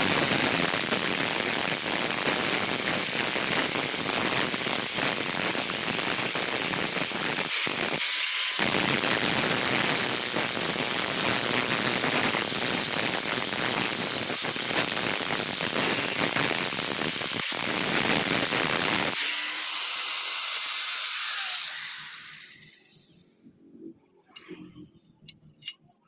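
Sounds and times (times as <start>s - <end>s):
arc welding crackling hiss: 0.0s - 19.2s.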